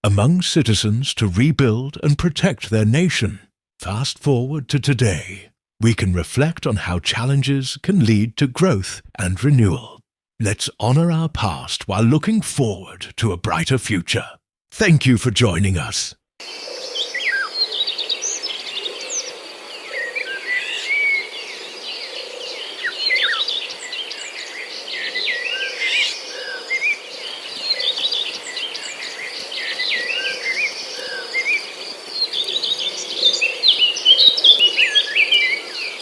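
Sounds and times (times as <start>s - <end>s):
birds chirping and calling: 16.4s - 36.0s.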